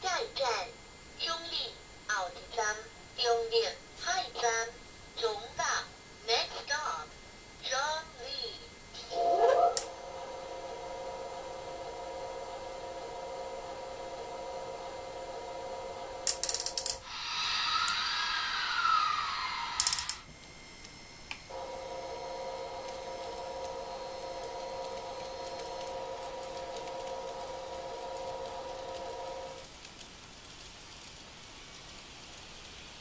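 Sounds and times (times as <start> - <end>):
hiss with rising and falling tone: 9.0 - 16.4, 17.0 - 29.7
electric train hum: 9.0 - 29.7.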